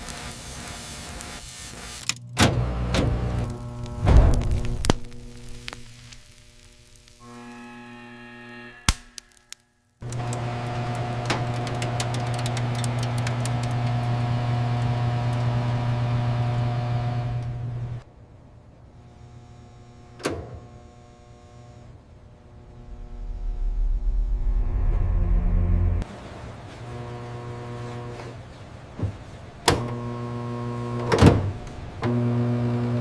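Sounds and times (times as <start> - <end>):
crackling clicks: 0.0 - 2.4, 3.3 - 7.2, 8.9 - 15.6
microwave oven humming: 1.8 - 4.1, 10.0 - 18.0, 29.7 - 33.0.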